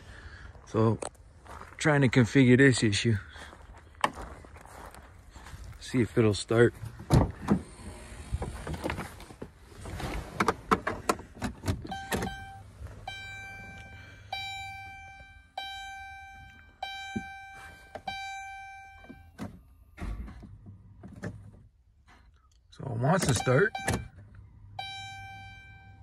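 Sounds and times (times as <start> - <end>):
dashboard warning chime: 11.8 - 20.0, 23.1 - 26.0.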